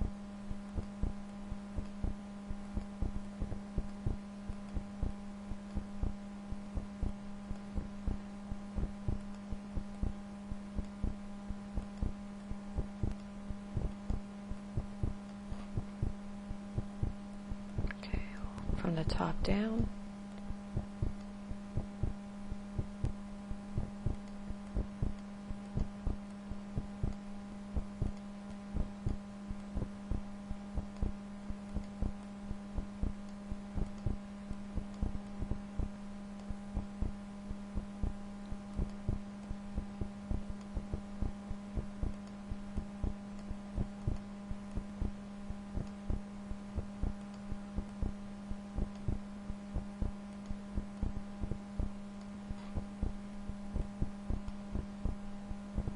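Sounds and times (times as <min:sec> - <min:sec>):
electrical hum: 0:00.0 - 0:55.9
computer mouse clicks: 0:33.2 - 0:35.4, 0:45.8 - 0:46.0, 0:47.2 - 0:48.0, 0:48.8 - 0:49.1.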